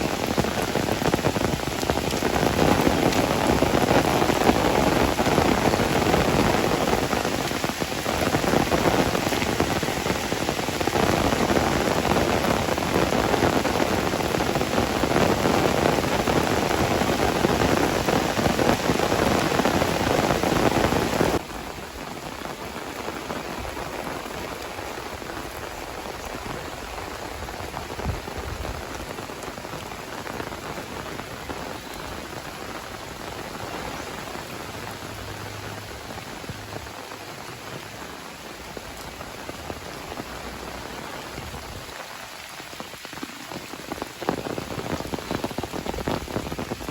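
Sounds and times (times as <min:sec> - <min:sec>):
heavy rain falling: 0:00.0 - 0:46.9.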